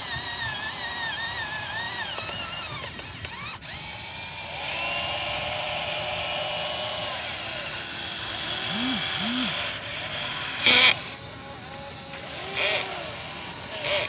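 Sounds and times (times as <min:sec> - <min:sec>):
electric motors whining: 0:00.0 - 0:14.0
loud noisy bursts: 0:04.3 - 0:11.2.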